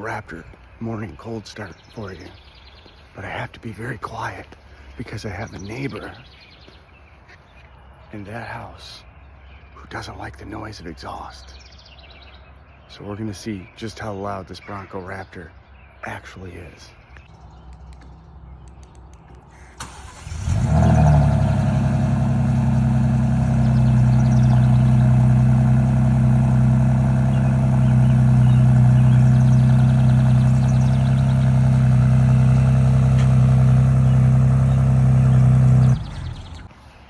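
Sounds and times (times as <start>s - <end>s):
engine starter: 19.8s - 25.3s, 27.3s - 36.7s
car engine idling: 19.8s - 36.8s.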